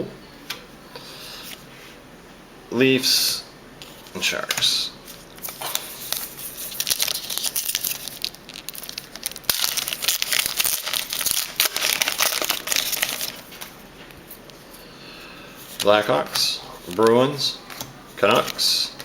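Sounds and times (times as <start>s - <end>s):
card pack wrappers crinkling and tearing: 4.5s - 14.5s, 15.7s - 19.0s.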